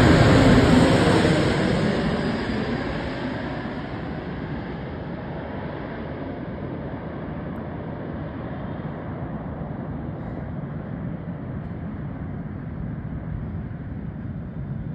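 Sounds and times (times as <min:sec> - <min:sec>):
aeroplane landing rumble: 0:00.0 - 0:14.9.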